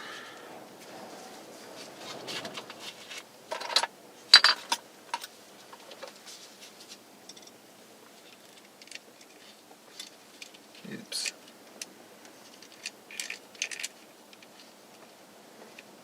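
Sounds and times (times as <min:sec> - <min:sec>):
small screws and hand tools clinking: 0:03.1 - 0:06.2, 0:11.8 - 0:14.8.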